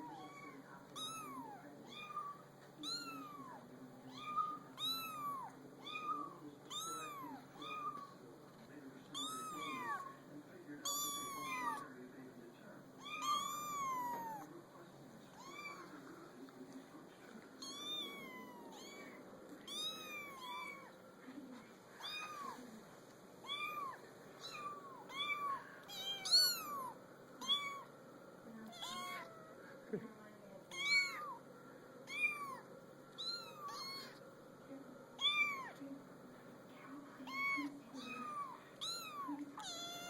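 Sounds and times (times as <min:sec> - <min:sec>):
kittens mewing: 0:00.0 - 0:08.2, 0:09.1 - 0:10.1, 0:10.8 - 0:11.8, 0:13.0 - 0:14.5, 0:17.6 - 0:20.9, 0:23.4 - 0:27.9, 0:30.7 - 0:31.4, 0:32.0 - 0:34.2, 0:35.2 - 0:35.8, 0:37.2 - 0:40.0.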